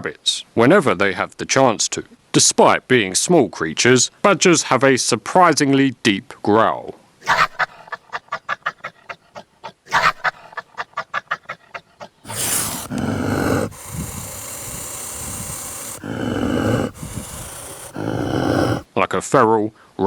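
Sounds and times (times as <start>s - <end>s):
badger grunting: 12.3s - 18.8s
badger growling: 12.3s - 18.9s.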